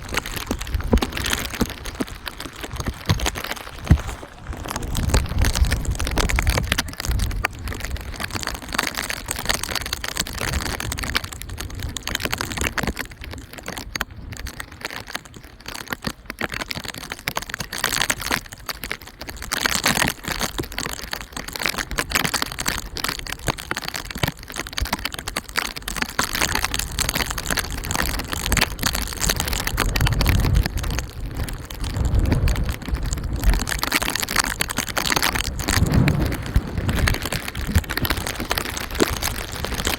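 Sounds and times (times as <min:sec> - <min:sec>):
steady rain crackling: 0:00.0 - 0:39.9.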